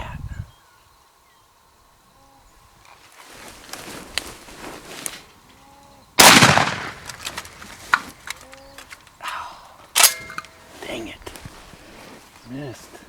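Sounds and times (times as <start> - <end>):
rustling: 2.8 - 13.0
shotgun shot: 6.2 - 7.6.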